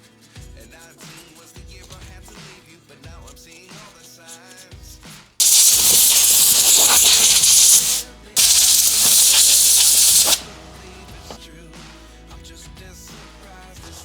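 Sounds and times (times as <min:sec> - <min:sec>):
pressurised spray hissing: 0:05.4 - 0:10.5.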